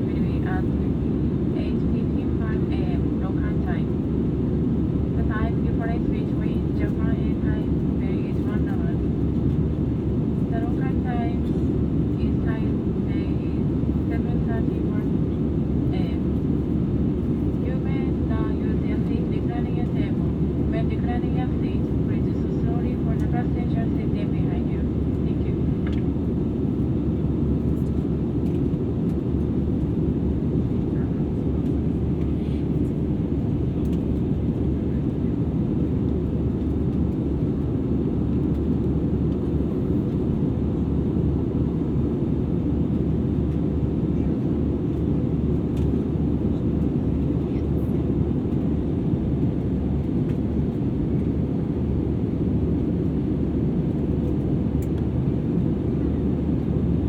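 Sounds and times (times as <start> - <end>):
faint steady hum: 0.0 - 9.2
aircraft cabin airflow and engine noise: 0.0 - 57.0.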